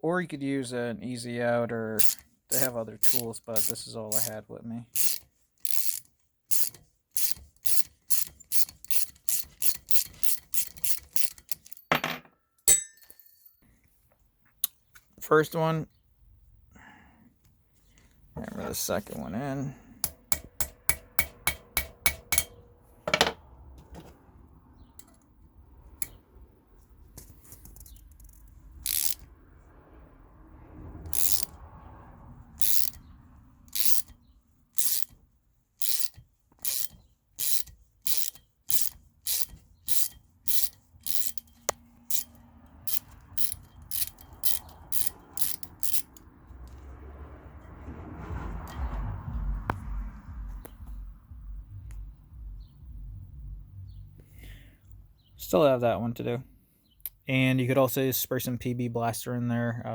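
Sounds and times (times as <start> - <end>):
ratchet clicking: 2.0 - 4.4, 5.0 - 11.9, 20.0 - 22.6, 27.8 - 29.3, 31.0 - 31.6, 32.6 - 33.0, 33.7 - 34.2, 34.8 - 35.2, 35.8 - 46.3
hammer tapping metal: 11.9 - 13.5, 20.0 - 23.4.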